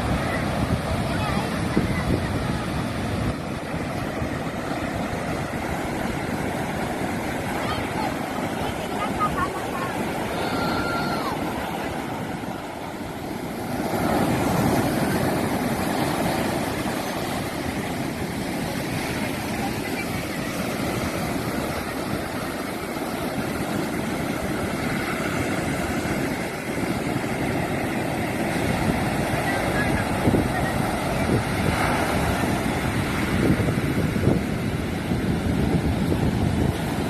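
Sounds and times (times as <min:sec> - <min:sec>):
ocean waves breaking: 0:00.0 - 0:37.0
wind buffeting microphone: 0:00.0 - 0:37.0.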